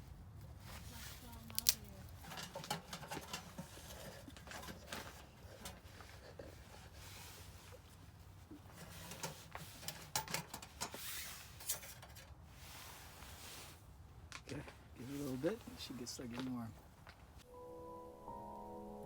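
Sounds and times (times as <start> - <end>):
light clicks and rustles: 0.6 - 12.4.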